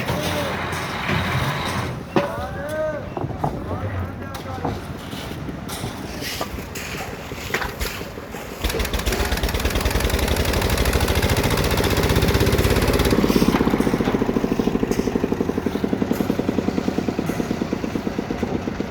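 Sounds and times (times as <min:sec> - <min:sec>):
small engine running: 0:08.6 - 0:18.9.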